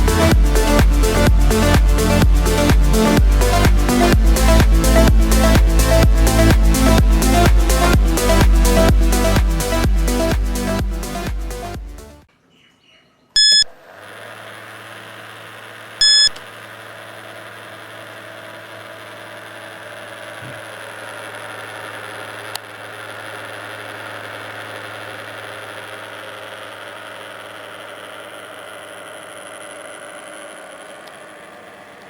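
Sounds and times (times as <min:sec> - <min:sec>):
short electronic beep: 0:13.4 - 0:13.7, 0:16.0 - 0:16.4
small motor whirring hum: 0:13.4 - 0:32.0.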